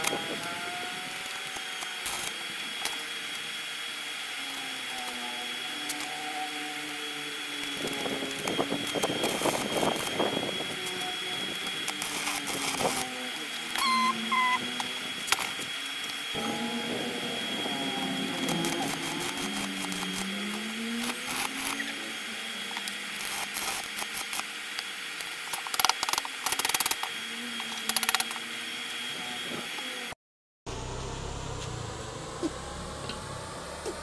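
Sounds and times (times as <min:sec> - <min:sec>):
motor whining: 0:00.0 - 0:34.0.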